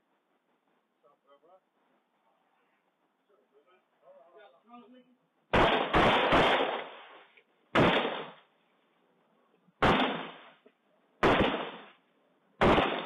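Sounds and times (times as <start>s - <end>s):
gunshots: 5.5s - 7.1s, 7.7s - 8.5s, 9.8s - 10.6s, 11.2s - 12.0s, 12.6s - 13.0s.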